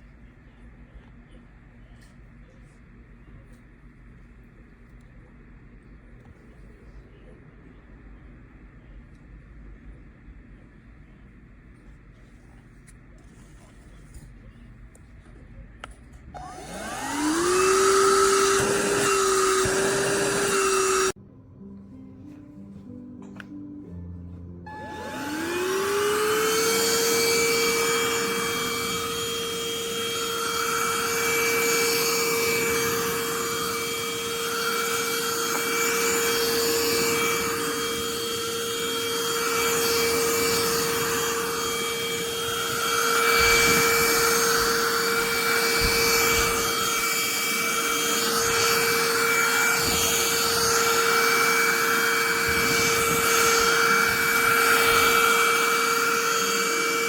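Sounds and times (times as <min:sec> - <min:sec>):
handheld vacuum motor whine: 0:16.4 - 0:21.2, 0:24.7 - 0:57.0.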